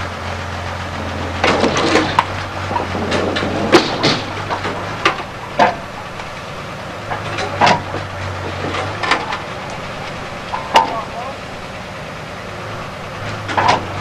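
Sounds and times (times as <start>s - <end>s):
machinery low hum: 0.0s - 14.0s
metal clanks and knocks: 0.9s - 11.3s, 13.2s - 14.0s.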